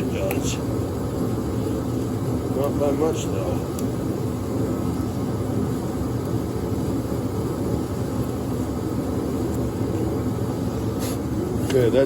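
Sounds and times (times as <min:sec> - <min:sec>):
low rumbling background noise: 0:00.0 - 0:12.0.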